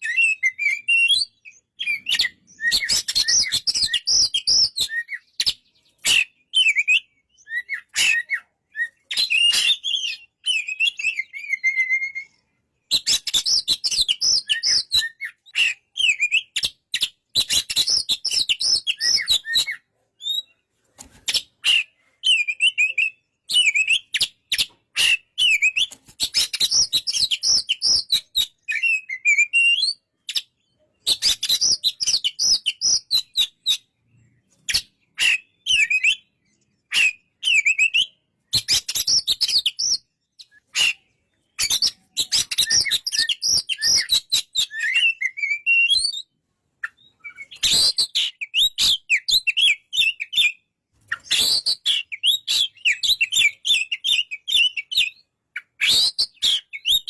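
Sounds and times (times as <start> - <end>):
bird singing whistled phrases: 0.0 - 20.6, 21.3 - 57.0.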